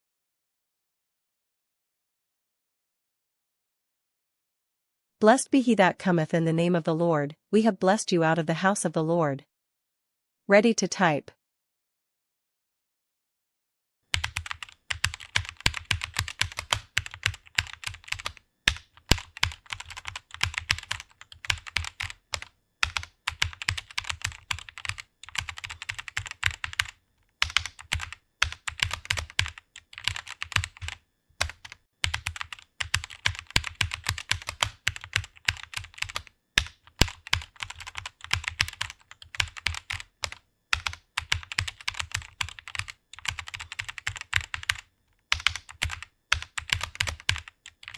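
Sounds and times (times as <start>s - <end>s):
fast keyboard typing: 14.1s - 47.9s.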